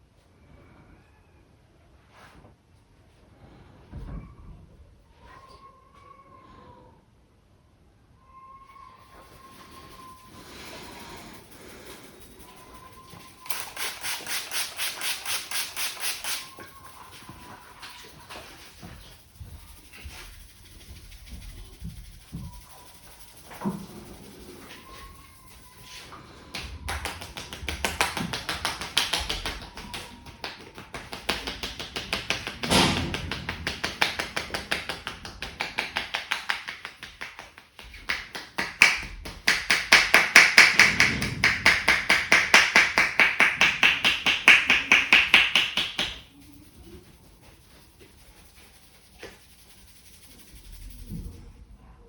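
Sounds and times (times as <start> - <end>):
hands tapping on a head: 9.1 - 46.5.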